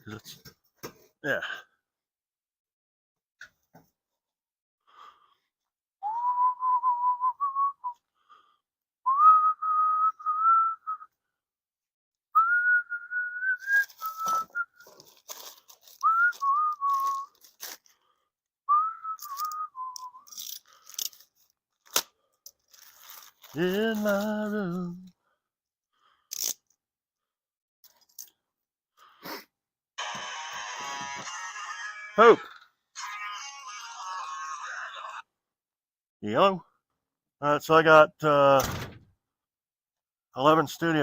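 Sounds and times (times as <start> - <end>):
person whistling a tune: 6.0 - 8.1, 9.0 - 11.2, 12.4 - 14.9, 16.0 - 17.4, 18.7 - 20.4
crunching and crinkling: 13.6 - 18.2, 20.3 - 24.9.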